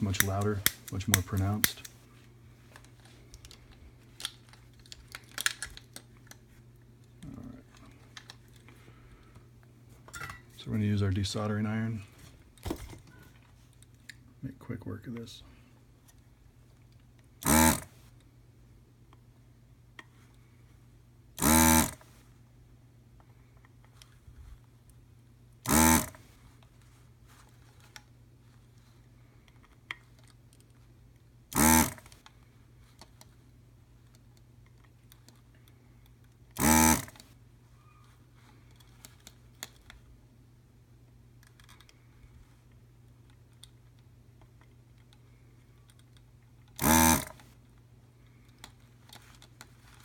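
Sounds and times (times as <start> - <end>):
low steady hum: 0.0 - 50.0
desoldering pump buzzing: 17.4 - 17.9, 21.4 - 22.0, 25.6 - 26.2, 31.5 - 32.1, 36.6 - 37.2, 46.8 - 47.4.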